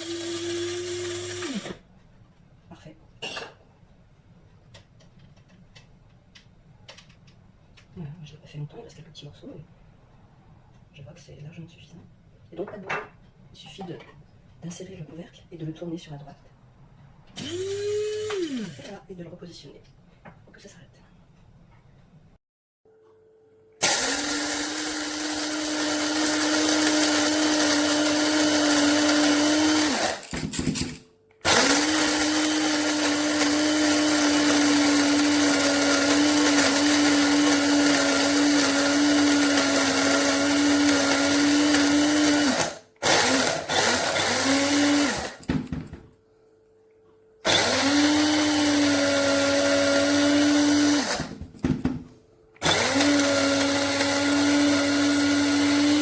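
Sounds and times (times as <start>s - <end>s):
electric blade grinder running: 23.8s - 30.9s, 31.5s - 45.4s, 47.5s - 51.4s, 52.6s - 56.0s.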